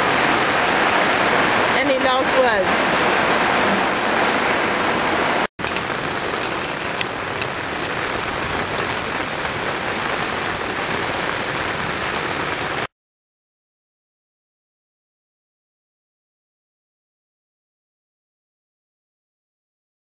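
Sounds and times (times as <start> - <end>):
heavy rain pouring: 0.0 - 12.9.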